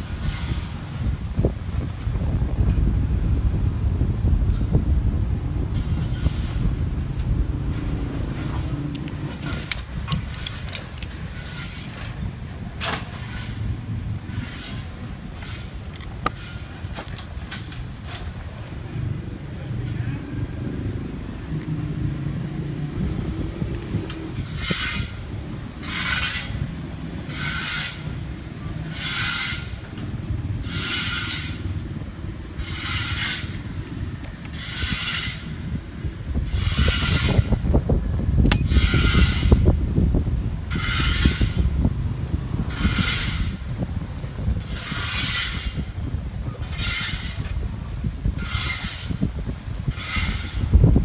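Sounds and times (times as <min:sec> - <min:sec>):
steady low rumble: 0:00.0 - 0:25.9, 0:35.5 - 0:51.0
brief rattle: 0:08.4 - 0:12.2
metallic clicks and jingles: 0:08.6 - 0:12.2, 0:15.4 - 0:17.3.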